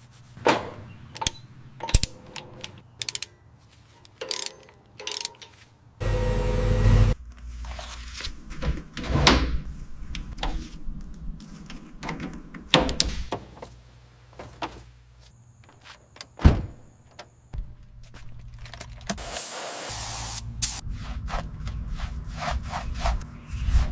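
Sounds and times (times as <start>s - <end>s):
loud low rumble: 6.0s - 7.2s.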